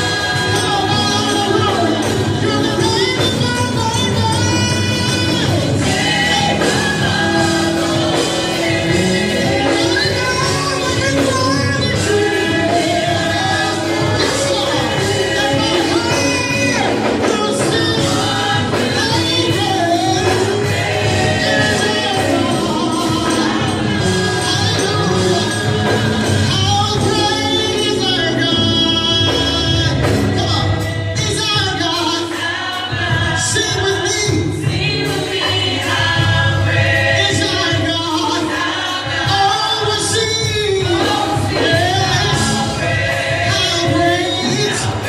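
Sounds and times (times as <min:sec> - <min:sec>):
band accompaniment: 0:00.0 - 0:45.0
choir singing gospel: 0:00.0 - 0:45.0.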